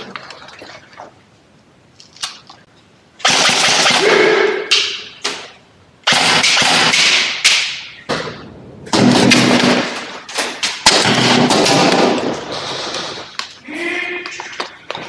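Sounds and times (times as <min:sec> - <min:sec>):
airsoft guns firing bursts: 0:03.2 - 0:04.3, 0:06.0 - 0:07.7, 0:08.9 - 0:13.2.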